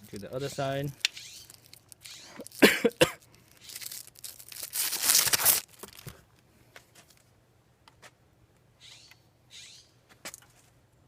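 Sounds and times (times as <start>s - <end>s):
rustling tearing wrapping: 0.1s - 6.2s.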